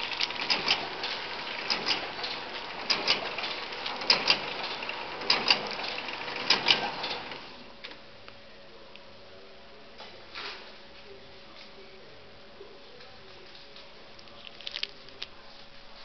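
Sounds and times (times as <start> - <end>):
sharp machine clacks: 0.0 - 7.4
wrapping machine hissing: 0.0 - 7.6.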